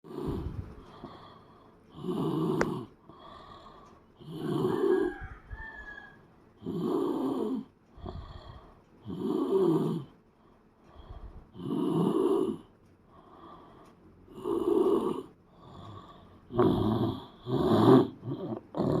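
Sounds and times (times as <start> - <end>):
loud rough snoring: 0.0 - 0.7, 1.9 - 2.9, 4.2 - 5.2, 6.6 - 10.1, 11.5 - 12.7, 14.3 - 19.0
quiet breaths: 0.0 - 19.0.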